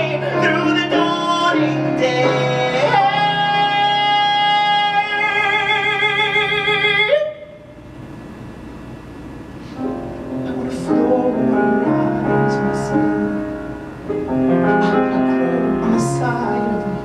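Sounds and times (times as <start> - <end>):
instrumental piano music: 0.0 - 5.1, 9.7 - 17.0.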